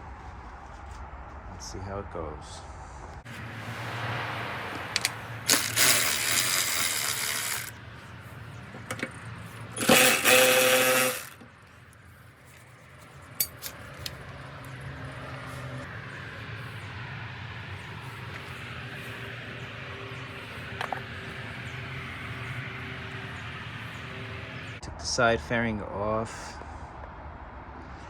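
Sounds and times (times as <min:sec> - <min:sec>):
power tool running: 0:05.0 - 0:07.8, 0:09.7 - 0:11.5
metallic clinks of tools: 0:05.5 - 0:07.7, 0:13.4 - 0:14.2.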